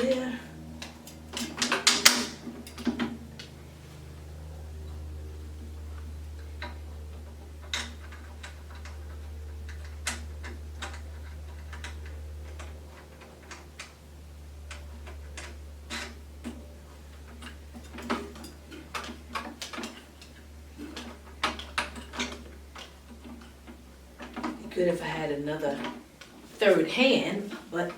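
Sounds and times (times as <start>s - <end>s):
parts clicking and knocking: 0.0s - 3.6s, 6.0s - 14.0s, 14.6s - 24.7s
steady low hum: 0.0s - 27.9s.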